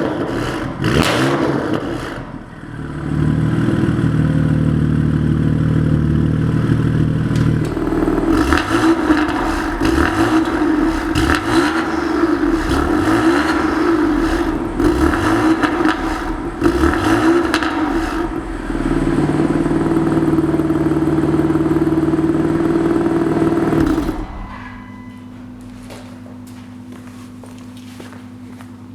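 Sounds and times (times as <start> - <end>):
car engine idling and revving: 0.0 - 28.9
exhaust crackles: 0.0 - 28.9.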